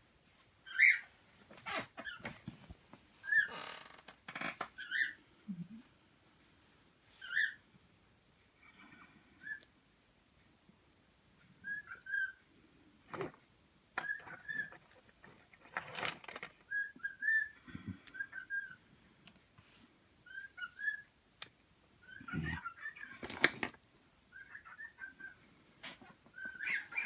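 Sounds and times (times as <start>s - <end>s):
small bird chirping: 0.6s - 1.1s, 3.2s - 3.6s, 4.8s - 5.6s, 7.2s - 7.6s, 9.4s - 9.7s, 11.6s - 12.4s, 14.0s - 15.8s, 16.4s - 18.9s, 20.2s - 23.2s, 24.3s - 25.5s, 26.3s - 27.0s.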